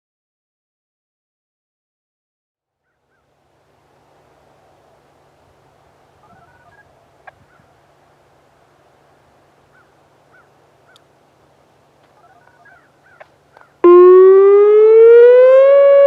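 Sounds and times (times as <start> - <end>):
high chirps: 13.8 - 16.0.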